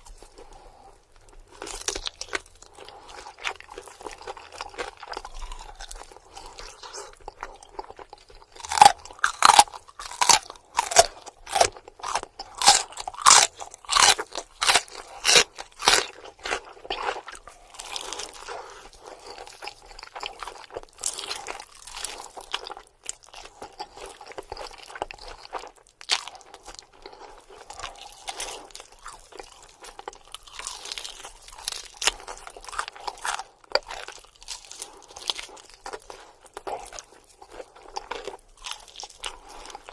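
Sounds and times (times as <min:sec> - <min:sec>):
soft chewing: 0:00.0 - 0:39.9
crisp crunching: 0:01.5 - 0:18.5.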